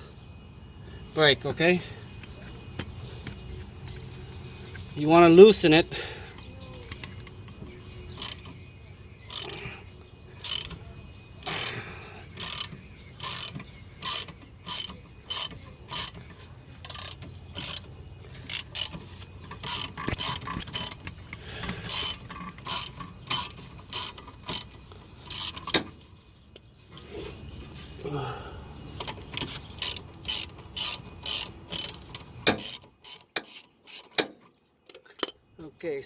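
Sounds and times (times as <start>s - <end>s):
ratchet wrench clicking: 6.3s - 8.6s, 9.2s - 9.7s, 10.4s - 10.8s, 11.4s - 26.0s, 29.0s - 35.4s.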